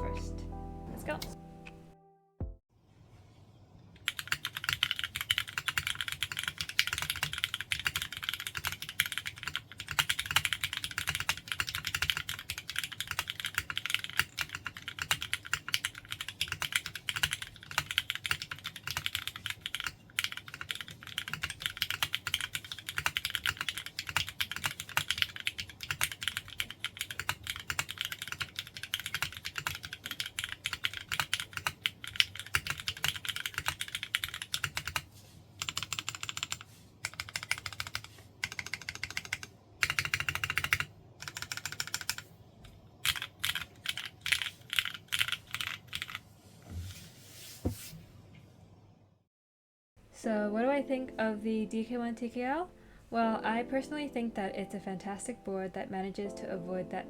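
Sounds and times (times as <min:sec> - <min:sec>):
fast mechanical keyboard typing: 0:04.0 - 0:42.3, 0:43.0 - 0:46.2.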